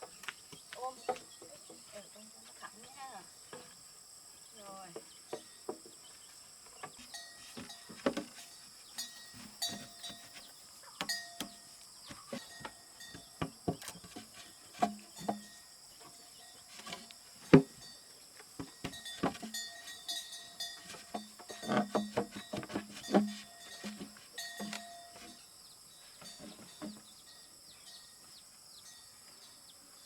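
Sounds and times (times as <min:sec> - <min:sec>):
sharp knocks and thuds: 0:16.8 - 0:17.9, 0:18.6 - 0:19.7, 0:20.9 - 0:25.4.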